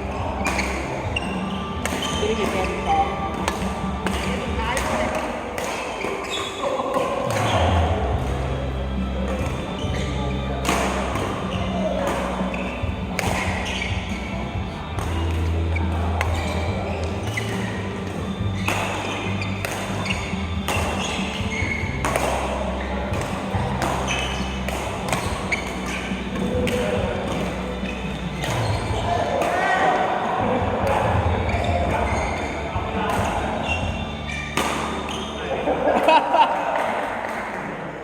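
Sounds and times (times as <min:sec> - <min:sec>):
background music with bass: 0:07.3 - 0:36.0.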